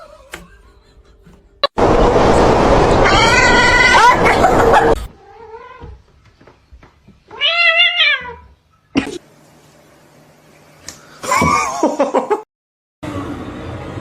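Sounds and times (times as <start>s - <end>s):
cat yowling and meowing: 5.2s - 6.0s, 7.3s - 8.5s.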